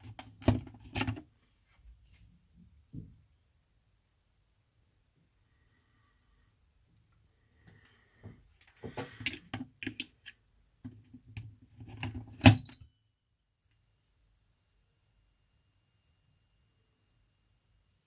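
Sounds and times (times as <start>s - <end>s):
power adapter being handled: 0.0s - 1.2s, 8.6s - 10.4s.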